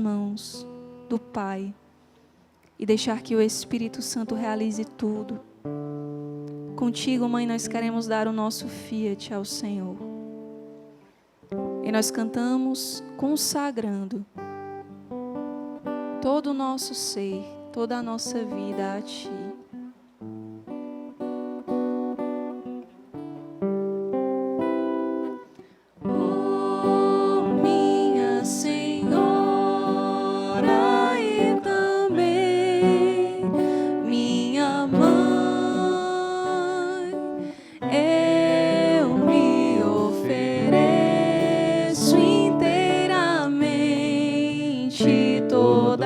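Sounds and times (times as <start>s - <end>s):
acoustic guitar picking and strumming: 14.4s - 46.0s
voices singing: 26.0s - 46.0s.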